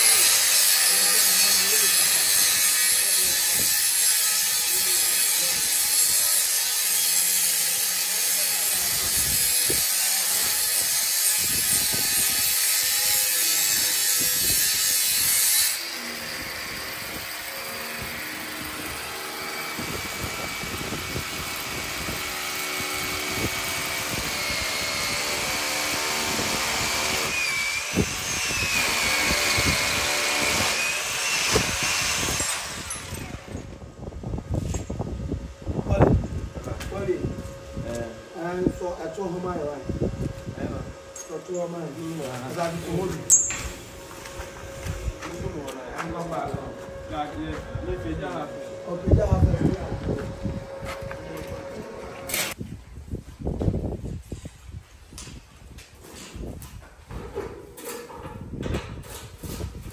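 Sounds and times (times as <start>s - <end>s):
power tool grinding metal: 0.0s - 33.8s, 36.8s - 52.6s
wavering whine: 33.2s - 52.6s.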